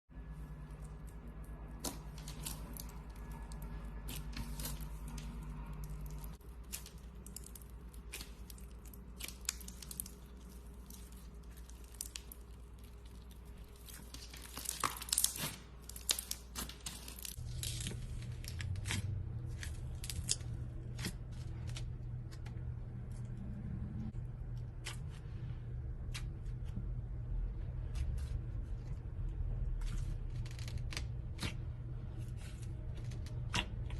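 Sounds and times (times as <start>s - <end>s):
low hum: 0.1s - 15.1s, 15.8s - 33.9s
packaging crinkling and tearing: 1.4s - 22.0s.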